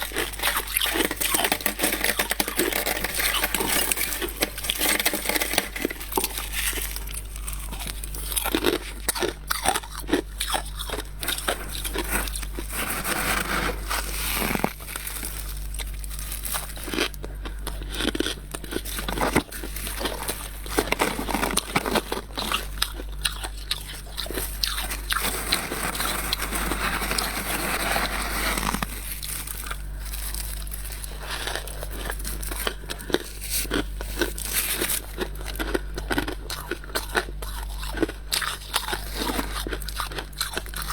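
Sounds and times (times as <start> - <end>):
frost crunching when chewed: 0.0 - 40.9.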